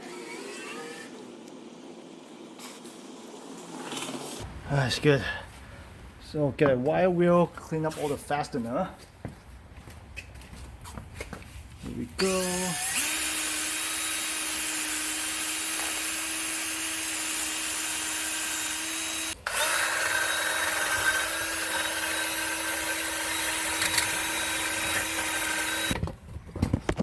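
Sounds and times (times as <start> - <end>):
wire wheel grinding on steel: 12.2 - 26.0.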